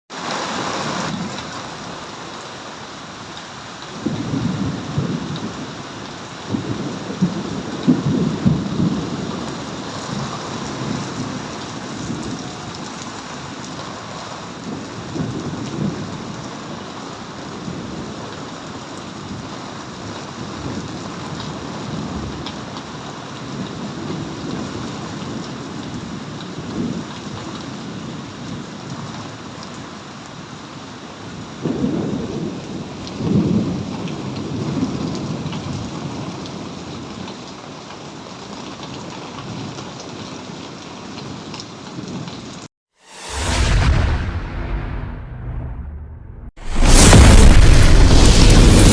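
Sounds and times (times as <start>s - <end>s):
steady rain: 0.1s - 43.4s, 46.6s - 48.9s
rolling thunder: 43.0s - 48.9s.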